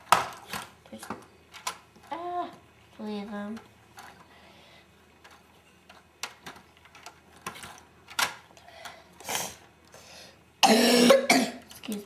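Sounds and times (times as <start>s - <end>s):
loud cough: 10.6s - 11.6s.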